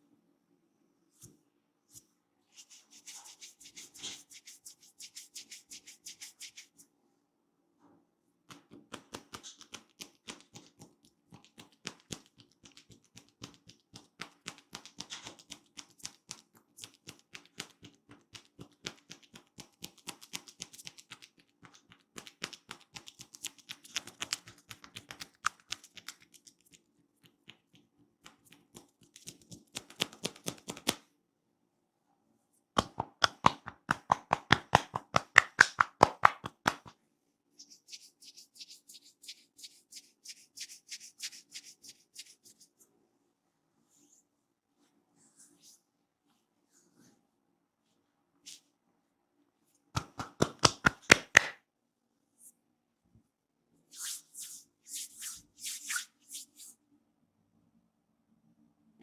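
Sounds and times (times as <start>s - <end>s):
hands tapping on oiled hair: 32.8s - 36.9s, 50.0s - 51.6s.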